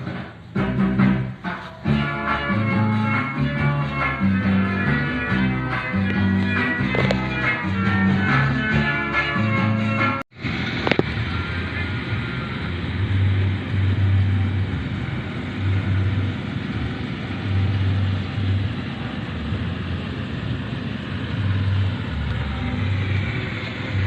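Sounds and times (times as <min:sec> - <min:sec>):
motor running with low rumble: 0:10.4 - 0:24.0.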